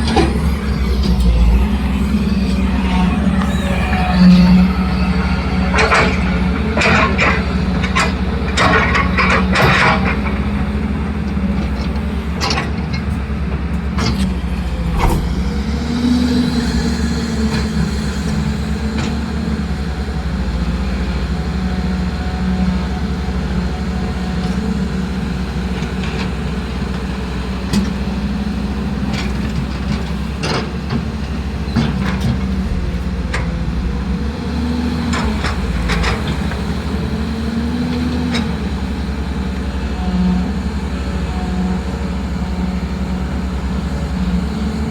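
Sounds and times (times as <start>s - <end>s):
machine motor humming: 0.0s - 7.4s, 14.4s - 18.6s, 32.4s - 36.8s.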